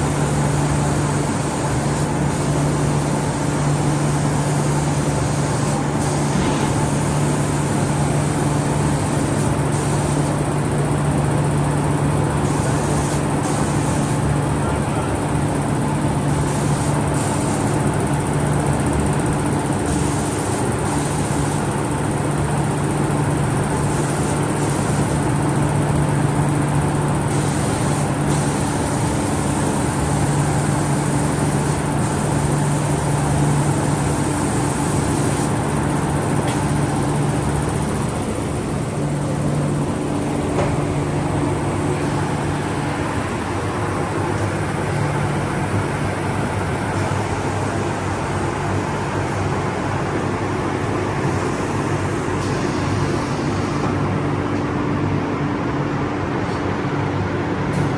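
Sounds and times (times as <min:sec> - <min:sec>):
spray hiss: 0:00.0 - 0:10.4, 0:12.4 - 0:14.2, 0:16.3 - 0:17.8, 0:19.9 - 0:21.7, 0:23.8 - 0:25.2, 0:27.3 - 0:35.6
machine motor hum: 0:05.0 - 0:08.8.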